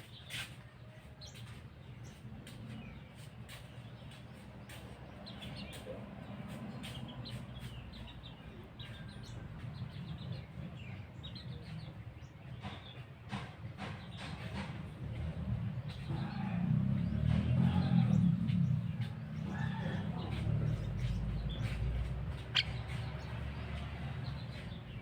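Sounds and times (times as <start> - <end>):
steady low rumble: 14.9 - 25.0.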